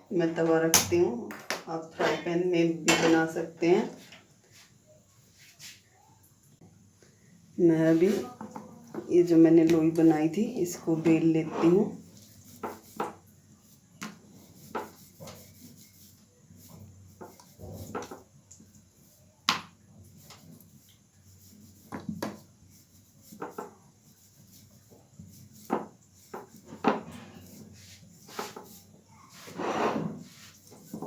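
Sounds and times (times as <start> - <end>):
rolling pin rubbing dough: 9.1 - 31.0.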